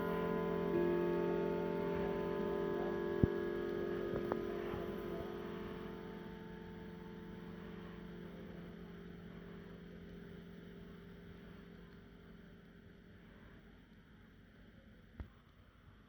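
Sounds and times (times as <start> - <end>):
grandfather clock chimes: 0.0 - 11.9.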